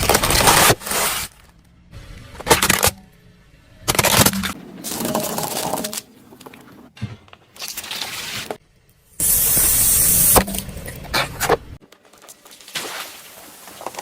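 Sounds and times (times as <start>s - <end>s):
objects crunching under tyres: 3.8s - 8.6s, 11.0s - 14.0s
loud hissing spray: 9.2s - 10.4s.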